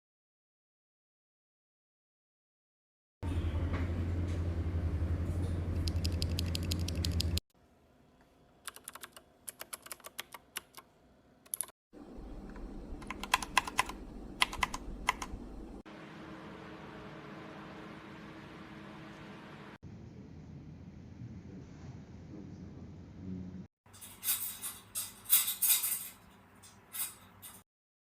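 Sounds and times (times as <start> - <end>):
low hum: 3.2 - 7.4, 12.0 - 21.5
mechanical keyboard typing: 5.8 - 7.4, 8.6 - 10.8, 11.5 - 11.7, 12.5 - 15.4.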